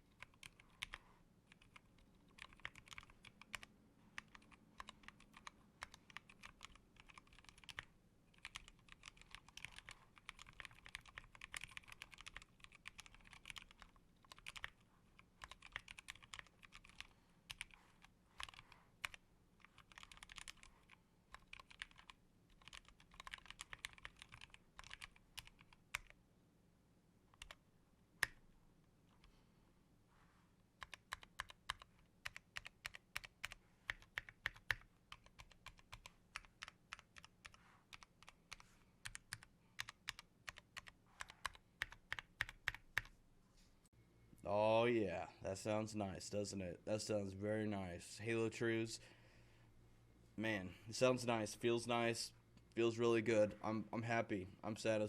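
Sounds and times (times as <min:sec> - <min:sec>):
mechanical keyboard typing: 0:00.1 - 0:26.2, 0:27.4 - 0:27.6, 0:30.8 - 0:43.1.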